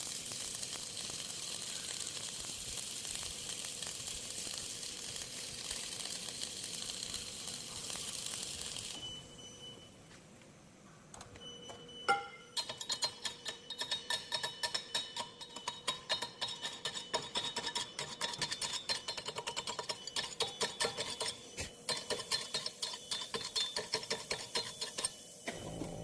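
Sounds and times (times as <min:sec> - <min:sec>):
spatter pops: 0:00.0 - 0:09.0
welding arc crackling: 0:00.0 - 0:09.4, 0:12.5 - 0:26.0.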